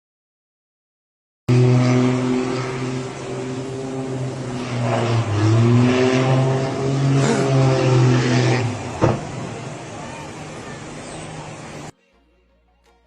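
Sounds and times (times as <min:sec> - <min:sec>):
engine droning: 0:01.5 - 0:11.9.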